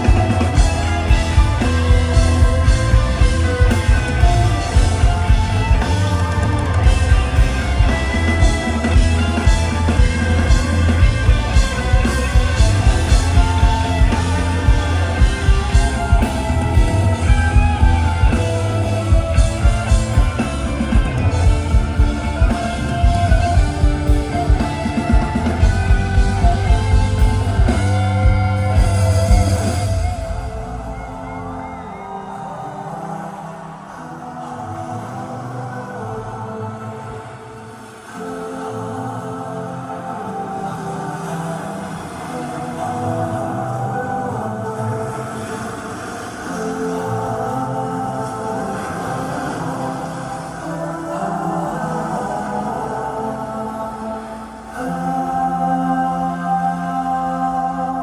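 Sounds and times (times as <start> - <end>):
rock band playing live: 0.0 - 32.4.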